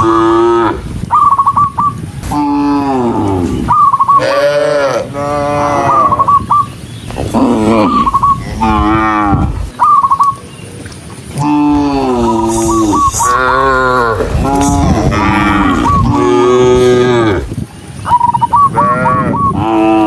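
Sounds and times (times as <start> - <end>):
cattle mooing: 4.2 - 6.2, 7.2 - 9.8, 11.4 - 17.6
short higher calls: 11.4 - 17.4.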